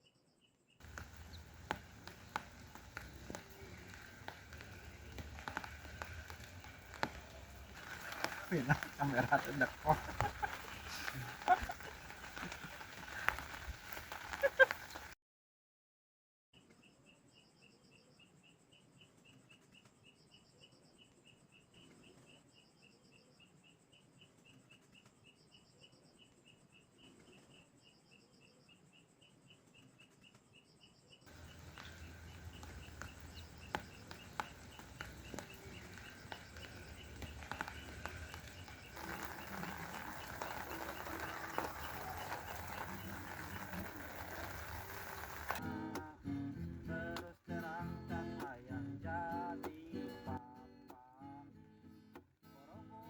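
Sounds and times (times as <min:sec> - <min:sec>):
insect trills: 0:00.8 - 0:15.0, 0:31.3 - 0:45.6
night insects chirping: 0:30.6 - 0:45.6.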